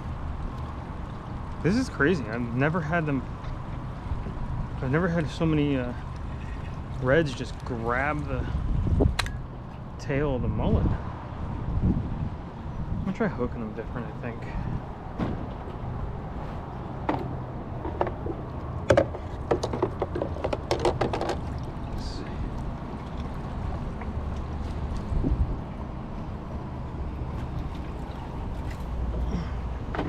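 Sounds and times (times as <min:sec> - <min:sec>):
gear clicks and knocks: 0:17.0 - 0:21.8.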